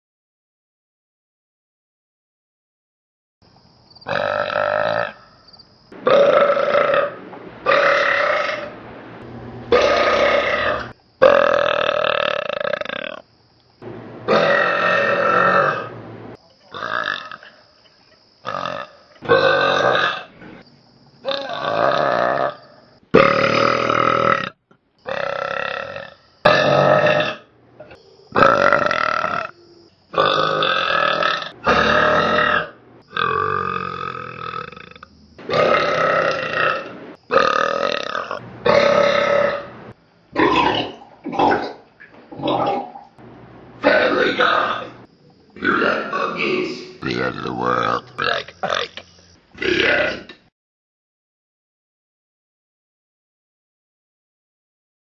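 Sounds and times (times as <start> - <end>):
person burping loudly: 4.1 - 5.2, 6.0 - 8.7, 9.7 - 13.2, 14.3 - 15.9, 16.7 - 17.6, 18.5 - 20.3, 21.2 - 22.6, 23.2 - 27.5, 28.3 - 29.5, 30.1 - 39.7, 40.4 - 43.0, 45.6 - 50.4.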